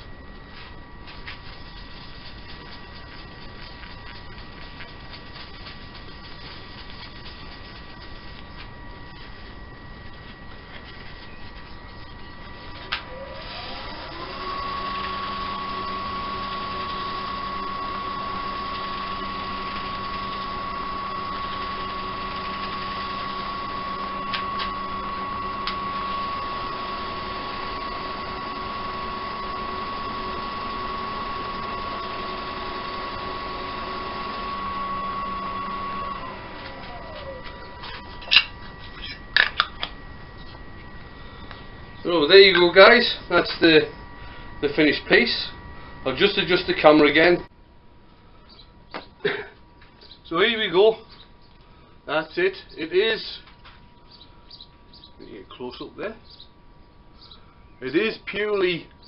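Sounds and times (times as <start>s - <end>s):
lathe motor whine: 0.0s - 51.0s.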